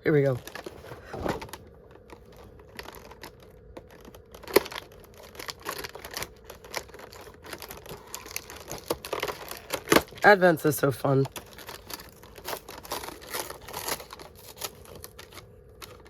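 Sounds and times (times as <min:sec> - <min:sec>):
packaging crinkling and tearing: 0:00.2 - 0:16.0
packaging snap: 0:02.7 - 0:10.2.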